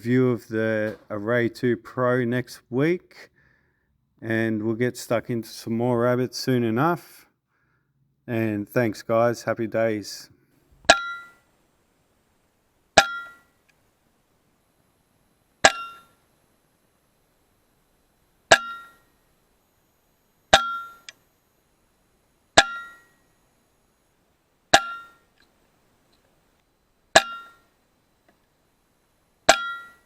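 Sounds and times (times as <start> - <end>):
metallic ring: 10.9 - 11.4, 13.0 - 13.6, 15.6 - 16.2, 18.5 - 19.2, 20.5 - 21.1, 22.6 - 23.3, 24.7 - 25.4, 27.1 - 27.7, 29.5 - 30.0.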